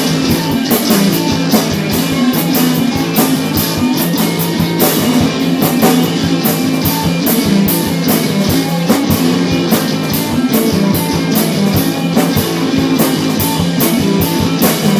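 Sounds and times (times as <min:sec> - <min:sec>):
drum kit beat: 0:00.0 - 0:14.9
electric guitar: 0:00.0 - 0:14.9.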